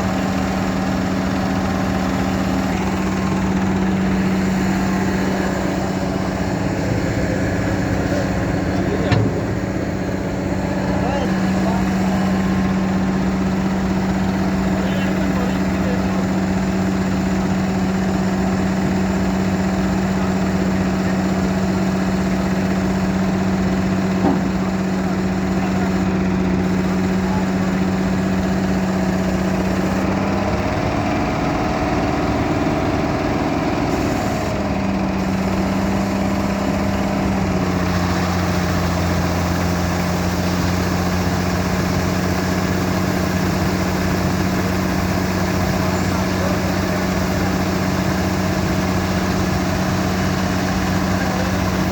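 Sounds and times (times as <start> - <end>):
deeper hum: 0.0 - 19.6
combine harvester engine droning: 0.0 - 51.9.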